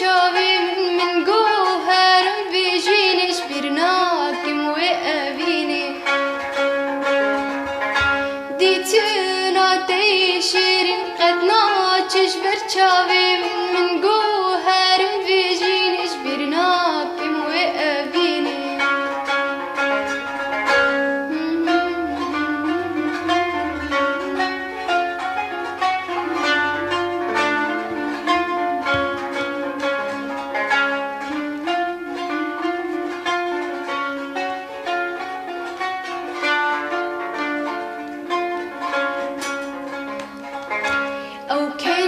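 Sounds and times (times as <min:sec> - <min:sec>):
plucked string instrument run: 0:00.0 - 0:42.0
band playing: 0:21.3 - 0:33.8.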